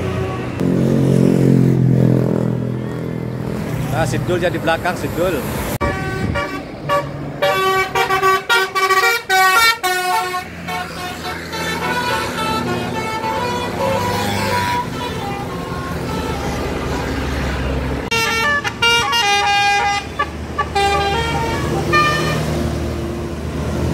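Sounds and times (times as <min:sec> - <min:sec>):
musical bus horn playing tune: 0:00.0 - 0:00.8, 0:05.8 - 0:17.0, 0:18.1 - 0:22.6.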